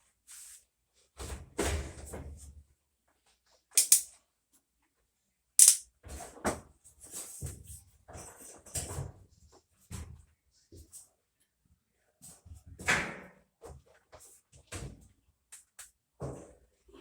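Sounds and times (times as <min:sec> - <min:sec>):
metal parts and tools knocking: 0:03.8 - 0:04.0, 0:05.6 - 0:05.8.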